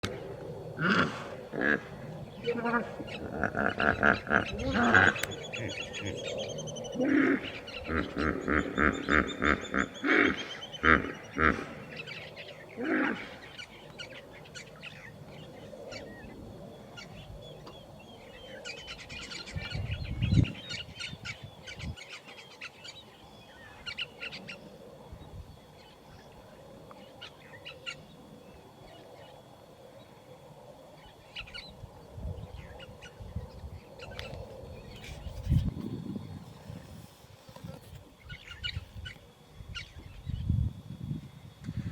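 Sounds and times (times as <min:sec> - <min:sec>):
birds calling and chirping: 0:00.0 - 0:41.9
hippopotamus grunting: 0:00.8 - 0:11.9, 0:12.8 - 0:13.5.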